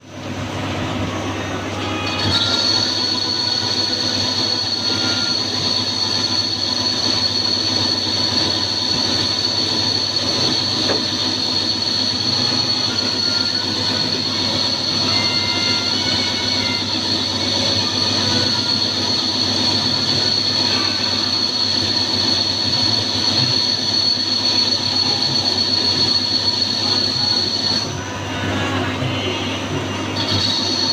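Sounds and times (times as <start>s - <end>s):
lathe high-pitched whine: 0.0s - 30.9s
low mechanical hum: 0.0s - 30.9s.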